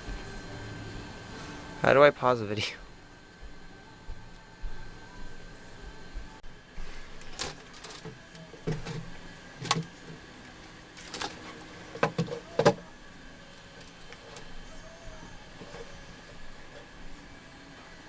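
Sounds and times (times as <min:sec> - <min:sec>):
hard objects knocking and clicking: 0:12.0 - 0:12.8.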